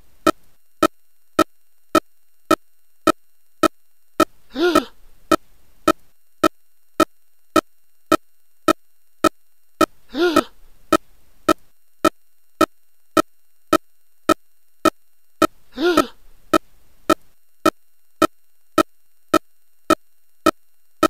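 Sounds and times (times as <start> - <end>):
groan-like voice clip: 4.5 - 5.0, 10.1 - 10.6, 15.7 - 16.2.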